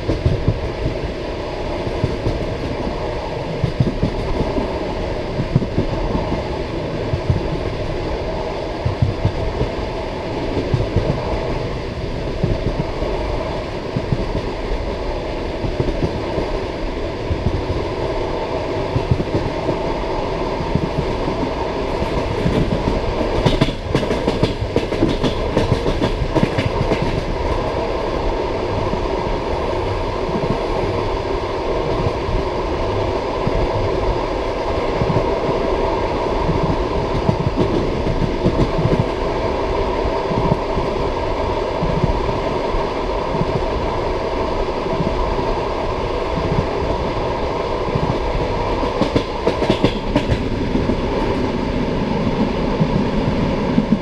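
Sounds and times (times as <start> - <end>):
train wheels clickety-clack: 0.0 - 7.9, 8.7 - 9.8, 10.4 - 11.7, 12.3 - 13.2, 13.8 - 16.6, 18.8 - 27.9, 34.6 - 35.7, 36.4 - 39.6, 40.2 - 41.0, 47.9 - 54.0.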